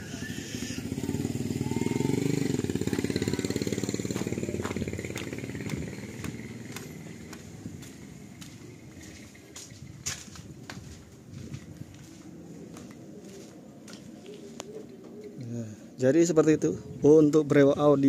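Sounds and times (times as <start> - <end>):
vehicle engine passing by: 0.0 - 10.0.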